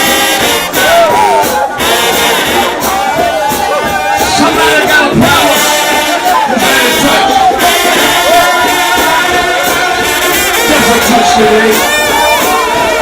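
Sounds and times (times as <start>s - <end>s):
brass band playing gospel music: 0.0s - 13.0s
congregation singing: 3.9s - 13.0s.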